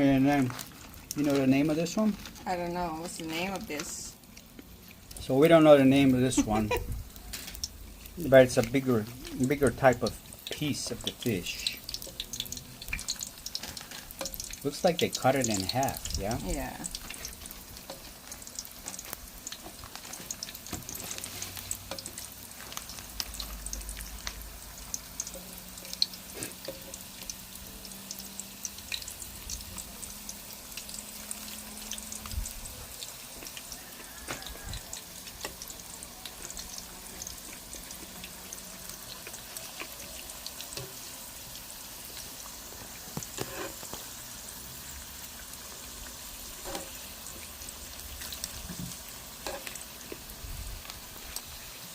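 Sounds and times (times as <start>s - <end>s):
fish sizzling in oil: 0.0s - 51.9s
oil popping and crackling: 0.0s - 51.9s.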